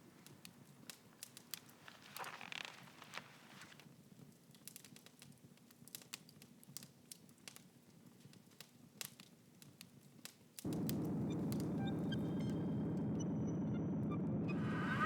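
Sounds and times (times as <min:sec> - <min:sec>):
faint clicks and crackles: 0:00.0 - 0:14.5
loud low rumbling drone: 0:10.7 - 0:15.0.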